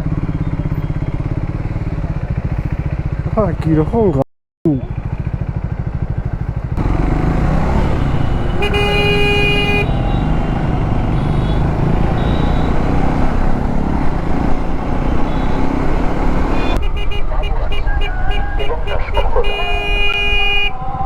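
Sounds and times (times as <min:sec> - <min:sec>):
motorcycle engine running: 0:00.0 - 0:20.7
road and traffic noise: 0:00.0 - 0:21.0
vehicle horn honking: 0:07.7 - 0:13.4, 0:14.9 - 0:20.8.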